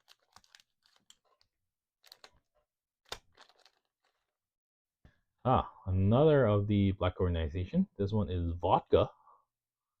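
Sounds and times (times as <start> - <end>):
cards clicking and rustling: 0.0 - 4.3.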